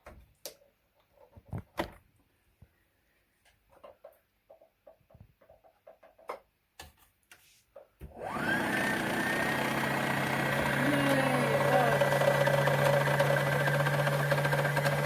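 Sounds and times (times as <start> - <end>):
sewing machine motor whine: 8.2 - 15.0.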